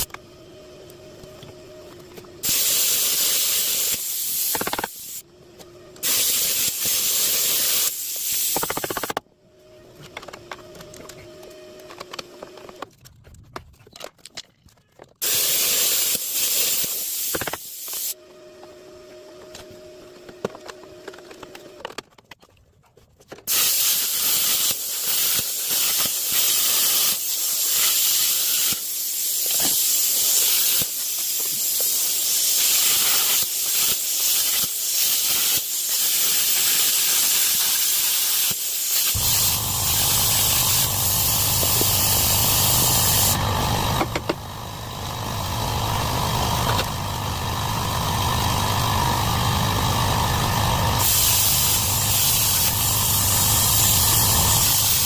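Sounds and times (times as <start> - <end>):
plasma cutter hissing: 2.4 - 5.2, 6.0 - 9.2, 15.2 - 18.2, 23.5 - 55.0
low hum: 39.2 - 54.7.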